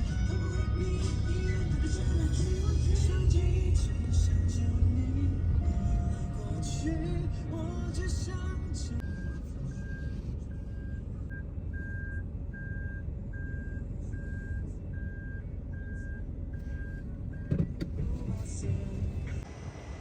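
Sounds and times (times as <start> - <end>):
vehicle reversing alarm beeping: 0.0 - 17.7
low engine and road rumble: 0.0 - 20.0.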